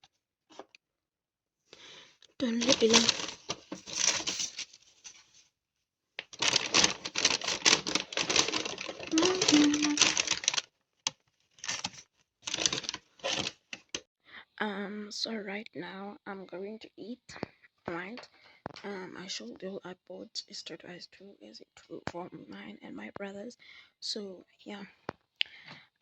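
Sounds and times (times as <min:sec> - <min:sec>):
food packaging rustling: 0:02.4 - 0:05.5, 0:06.2 - 0:14.0.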